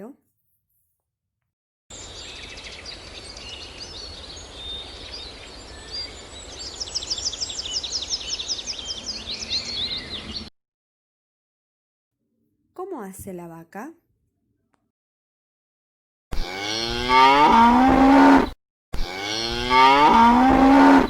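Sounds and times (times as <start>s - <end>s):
birds singing and chirping: 2.0s - 10.5s
repeated high down-slurred bird notes: 16.6s - 21.0s.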